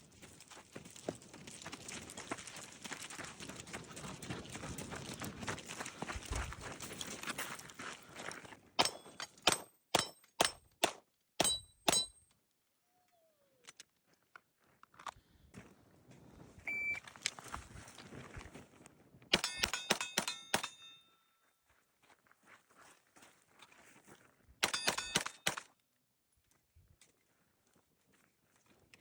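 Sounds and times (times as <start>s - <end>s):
bbs hitting steel targets: 8.8s - 12.2s, 19.4s - 21.0s, 24.6s - 25.6s
short high beep: 16.7s - 17.0s.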